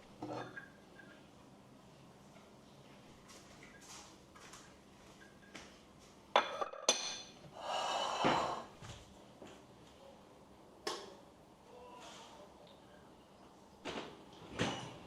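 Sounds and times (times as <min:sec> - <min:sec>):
dishware clinking: 0:00.2 - 0:01.1, 0:06.4 - 0:07.4.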